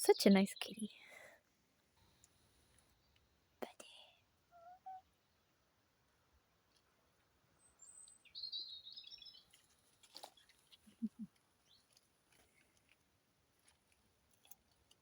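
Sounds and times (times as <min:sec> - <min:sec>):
quiet garden ambience: 0:00.0 - 0:15.0
small songbird twittering: 0:07.6 - 0:09.5.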